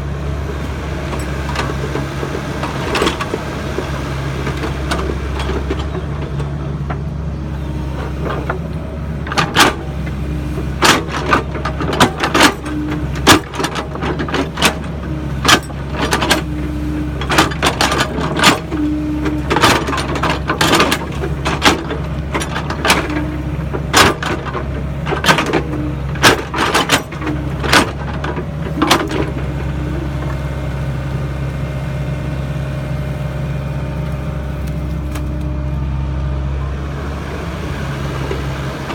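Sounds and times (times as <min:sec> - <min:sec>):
excavator diesel engine running: 0:00.0 - 0:38.9
digging knocks and clanks: 0:00.4 - 0:30.8.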